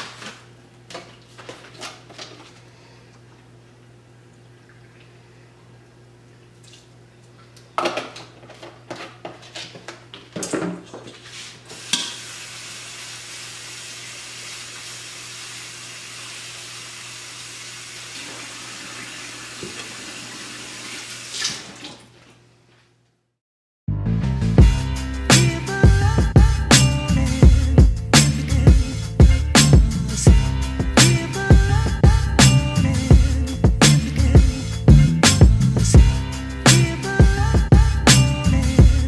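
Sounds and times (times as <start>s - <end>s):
dishes clattering in sink: 10.4s - 11.2s, 11.9s - 12.2s
tap water running: 11.7s - 22.4s.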